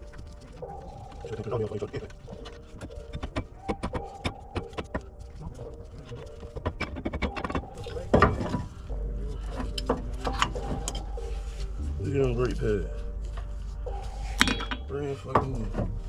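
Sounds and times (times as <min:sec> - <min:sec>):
low rumble: 0:07.6 - 0:16.0.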